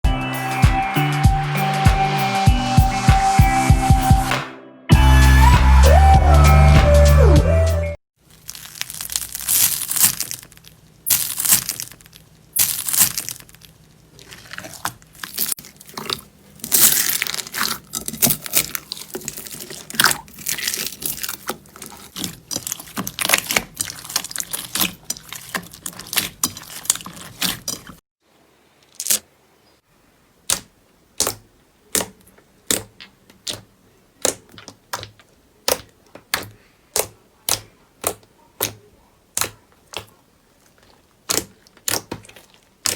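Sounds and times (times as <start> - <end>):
crunchy slime crackling: 8.2 - 28.0, 28.8 - 29.3, 30.4 - 42.9
sharp pops or clicks: 30.4 - 38.8.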